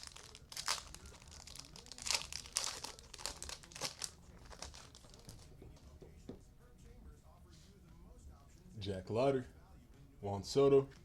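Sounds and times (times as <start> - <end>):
cards and wrapping crinkling: 0.0 - 5.5.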